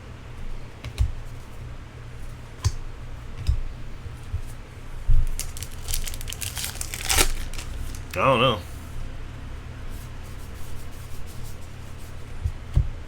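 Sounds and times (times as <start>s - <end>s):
crisp card rustling: 5.3s - 8.6s.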